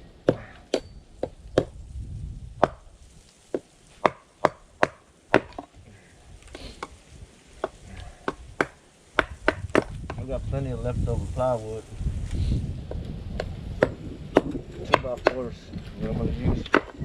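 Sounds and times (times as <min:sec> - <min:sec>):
wood being chopped: 0:00.2 - 0:01.8, 0:02.6 - 0:05.8, 0:06.5 - 0:07.0, 0:07.6 - 0:10.2, 0:12.9 - 0:15.5, 0:16.5 - 0:17.0.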